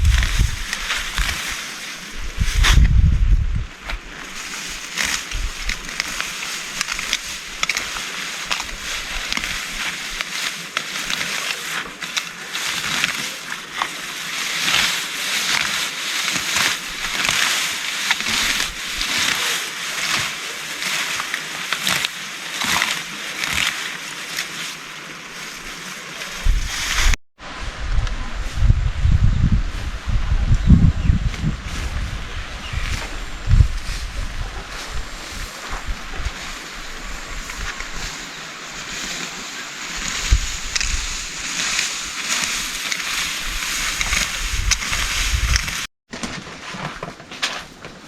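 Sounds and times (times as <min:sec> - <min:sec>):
wind buffeting microphone: 0:00.0 - 0:06.0, 0:26.3 - 0:38.2, 0:39.8 - 0:45.9.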